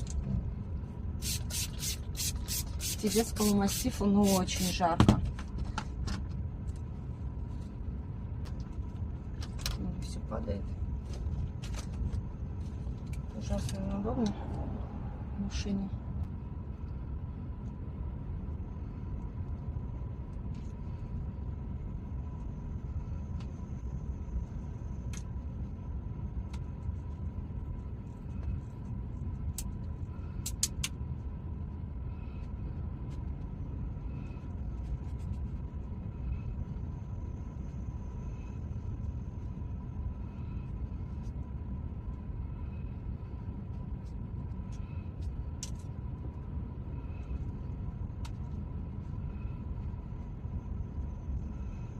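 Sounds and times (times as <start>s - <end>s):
faint high whine: 6.7s - 51.9s.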